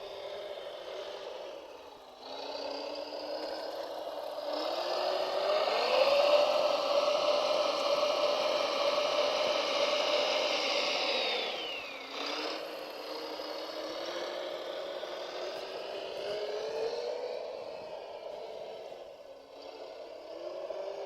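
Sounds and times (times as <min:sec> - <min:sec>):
electric motor whining: 0:09.0 - 0:16.5.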